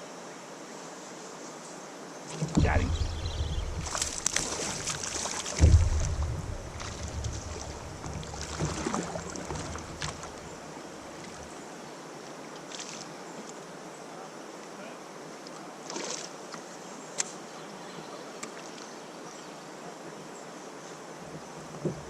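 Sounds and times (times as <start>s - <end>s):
knock against kayak: 2.3s - 10.4s
water splashes: 2.3s - 11.6s, 12.2s - 13.5s, 15.5s - 17.3s
low microphone rumble: 2.4s - 10.5s.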